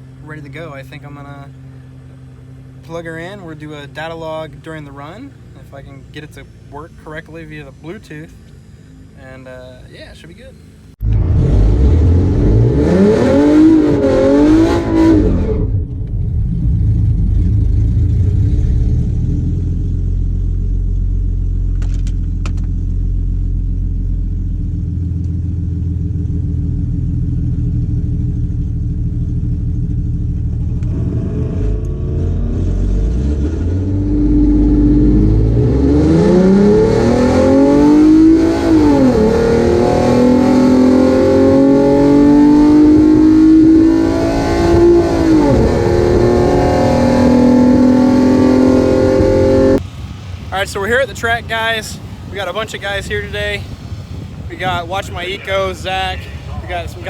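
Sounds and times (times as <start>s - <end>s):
car engine revving: 10.7s - 49.8s.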